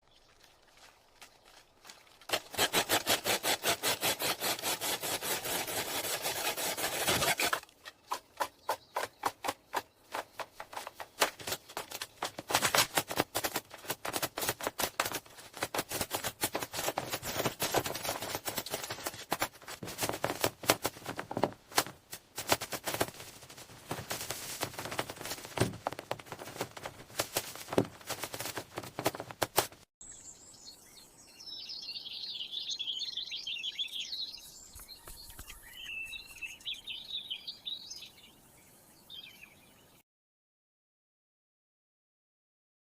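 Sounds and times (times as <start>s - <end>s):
hand tool scraping wood: 2.3s - 23.2s
bird chirping: 30.0s - 40.0s.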